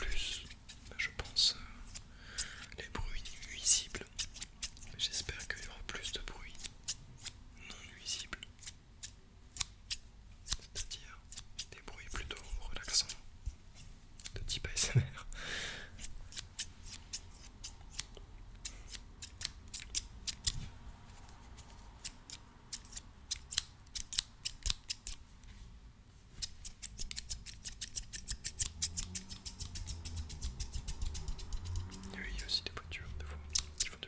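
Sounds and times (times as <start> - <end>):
scissors snipping: 1.9 - 5.7, 8.6 - 11.7, 14.2 - 14.6, 16.3 - 20.6, 22.0 - 25.2, 26.4 - 32.6, 33.5 - 34.0.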